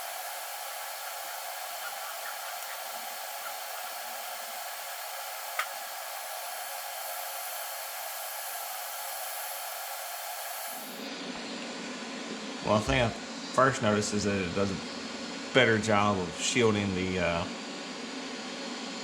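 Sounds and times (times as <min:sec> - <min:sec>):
welding arc crackle: 0:00.0 - 0:11.0
welding arc hissing: 0:00.0 - 0:11.1.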